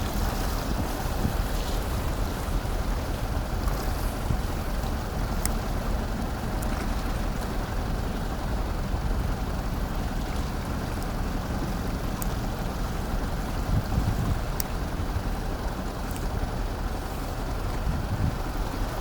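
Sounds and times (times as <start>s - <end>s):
steady low rumble: 0.0s - 19.0s
wind buffeting microphone: 0.0s - 19.0s
faint ticks: 3.1s - 7.6s, 10.2s - 14.9s, 16.0s - 16.4s.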